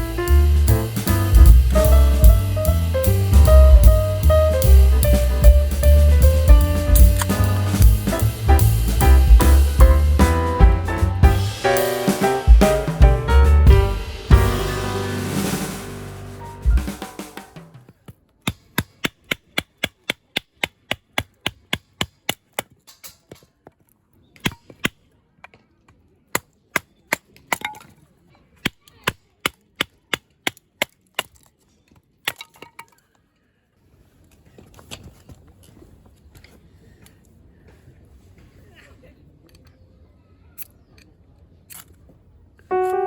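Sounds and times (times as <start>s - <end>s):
faint steady hiss: 0.0s - 17.8s
sharp evenly spaced strikes: 0.0s - 17.8s, 42.7s - 43.0s.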